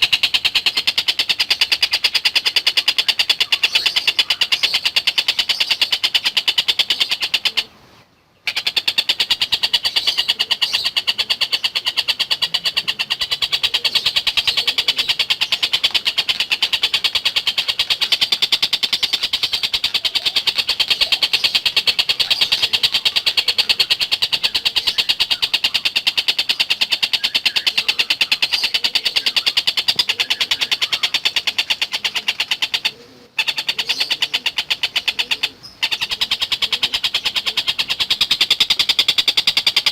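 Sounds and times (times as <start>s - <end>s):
kingfisher chattering call: 0.0s - 7.7s, 8.4s - 39.9s.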